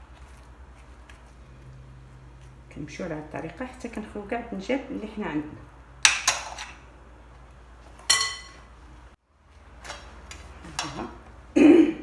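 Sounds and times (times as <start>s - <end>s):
utensil clinking against dish: 8.0s - 8.6s.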